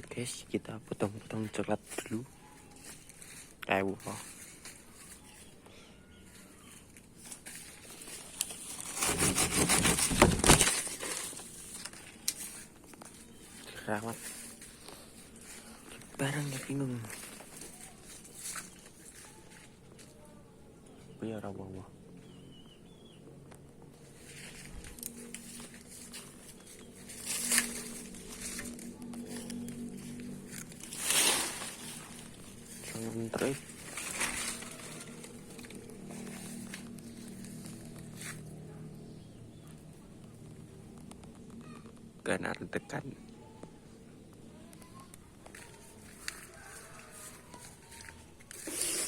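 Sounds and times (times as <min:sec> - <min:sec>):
leaves and branches crackling: 0:00.0 - 0:49.0
tool rasping into wood: 0:08.8 - 0:10.6.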